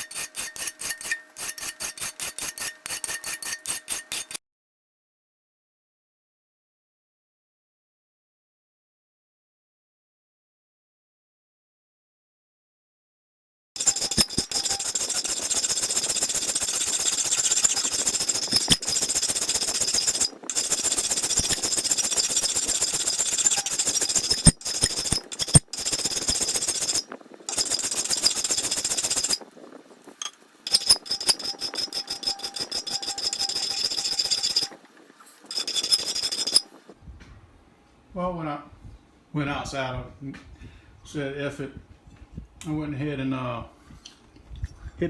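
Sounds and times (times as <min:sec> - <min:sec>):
angle grinder grinding steel: 0:00.0 - 0:04.4, 0:13.8 - 0:29.4, 0:30.2 - 0:34.8, 0:35.5 - 0:36.7.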